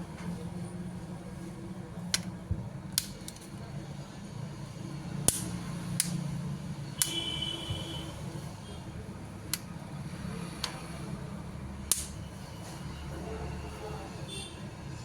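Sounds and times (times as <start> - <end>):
clicks of small hard objects: 3.0 - 3.6.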